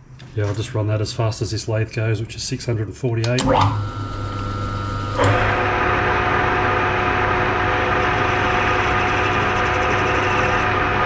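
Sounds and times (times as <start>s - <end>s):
metal lathe humming with gear whine: 3.4s - 11.0s.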